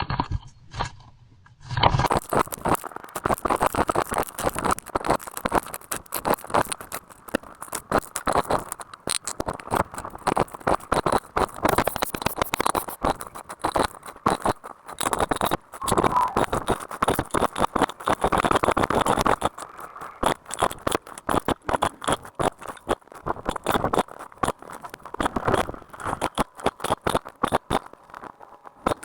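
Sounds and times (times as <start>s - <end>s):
dense crackling and rustling: 16.8s - 29.0s.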